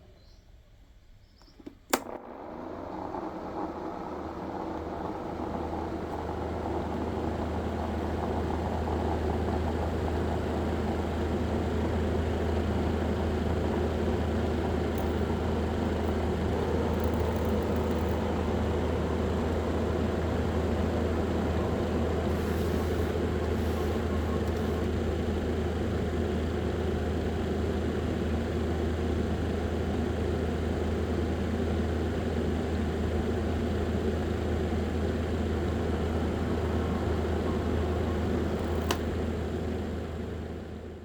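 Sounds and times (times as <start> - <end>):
switch click: 1.4 - 2.2
small motor fan humming: 1.4 - 26.3, 33.1 - 40.4.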